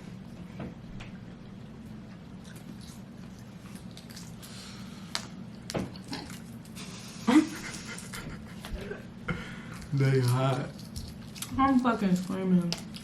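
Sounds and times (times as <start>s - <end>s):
wet squishing food: 1.8s - 7.1s.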